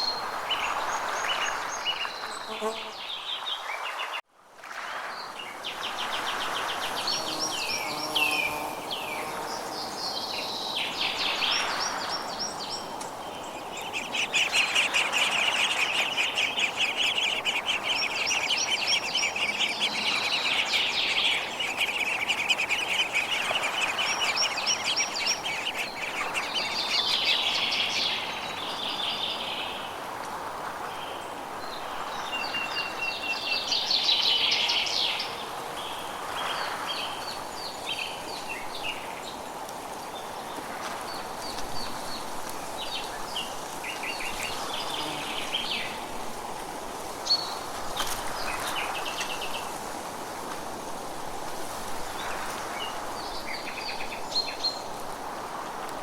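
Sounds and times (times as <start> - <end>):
songbirds chirping and singing: 10.4 - 28.5
bird rapid trill: 13.8 - 27.5.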